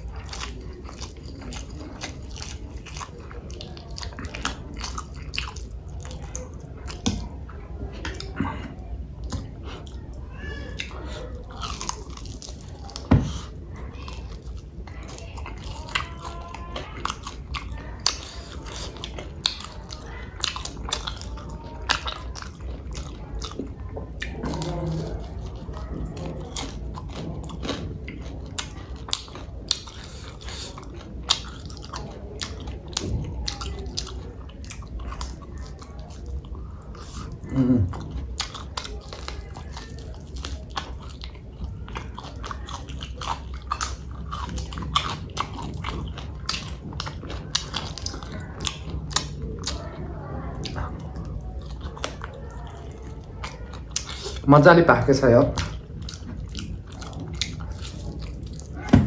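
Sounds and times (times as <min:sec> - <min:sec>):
chewing and biting food: 0:00.0 - 0:59.0
wet mouth clicks: 0:50.6 - 0:54.5.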